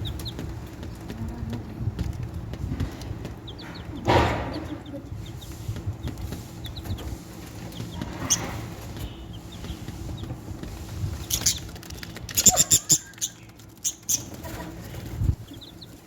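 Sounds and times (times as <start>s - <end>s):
chicks peeping: 0.0s - 16.0s
loud rustling: 0.0s - 16.0s.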